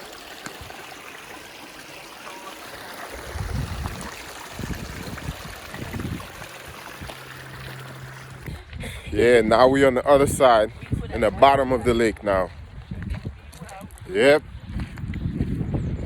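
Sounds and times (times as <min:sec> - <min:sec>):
stream trickling: 0:00.0 - 0:08.8.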